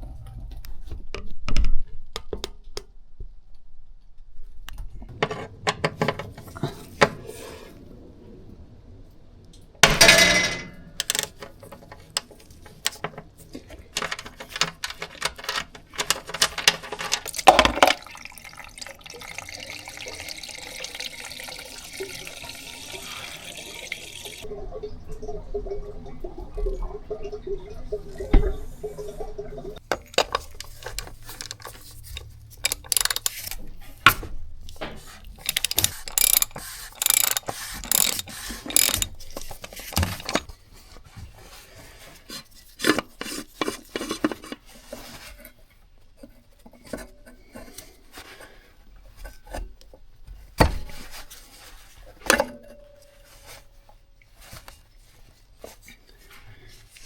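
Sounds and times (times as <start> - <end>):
hand tools and metal parts clinking: 9.8 - 18.0, 29.8 - 34.1, 34.7 - 40.5.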